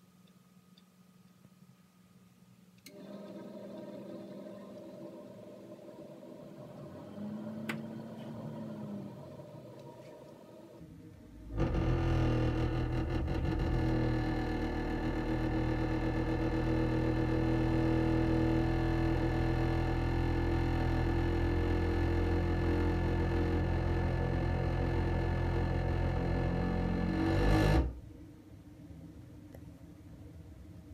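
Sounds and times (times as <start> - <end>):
gas boiler humming: 2.8 - 10.8.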